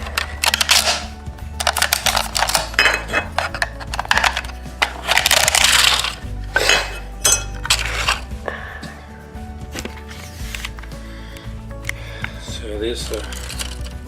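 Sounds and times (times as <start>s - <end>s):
plastic clicking and cracking: 0.0s - 6.2s
background music: 0.0s - 14.0s.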